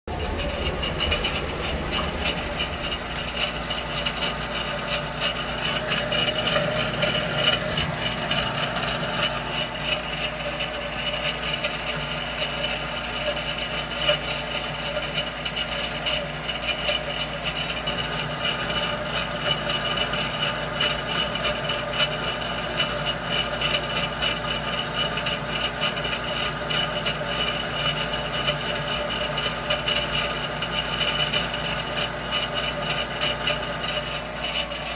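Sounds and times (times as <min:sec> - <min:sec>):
fast rattling tick: 0:00.1 - 0:09.9
heater mechanical whir: 0:00.1 - 0:34.9.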